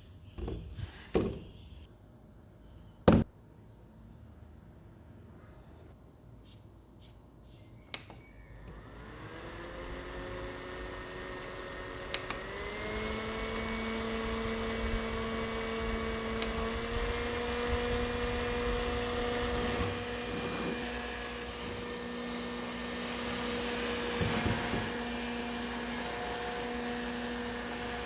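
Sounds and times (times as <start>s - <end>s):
small fan motor whining: 8.5s - 28.0s.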